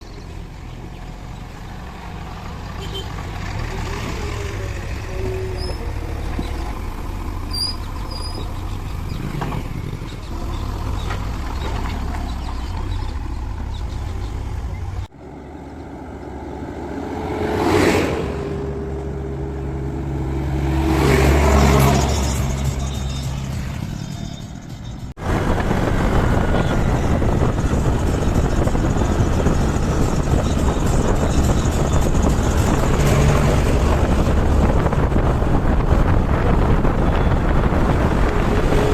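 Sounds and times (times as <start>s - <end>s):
backhoe loader diesel engines: 0.0s - 38.9s.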